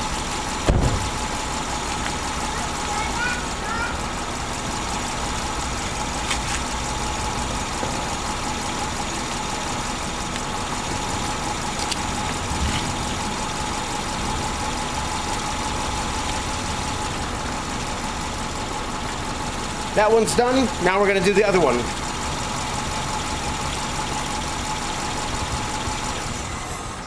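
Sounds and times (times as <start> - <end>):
engine hum with faint whine: 0.0 - 27.0.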